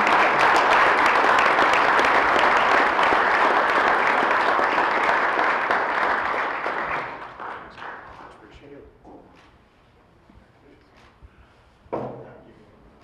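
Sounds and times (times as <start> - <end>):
audience applauding: 0.0 - 8.5.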